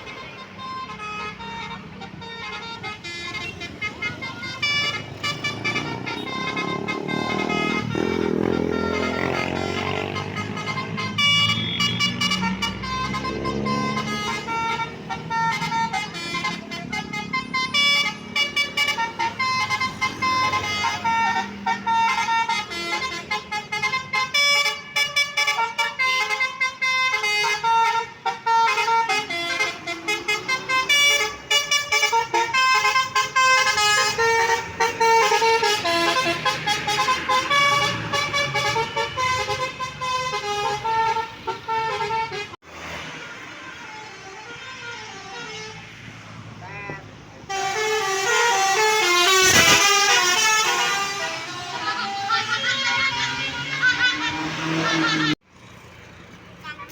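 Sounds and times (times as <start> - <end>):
bus horn playing melody: 0.0 - 42.8, 43.4 - 46.8, 47.4 - 55.4.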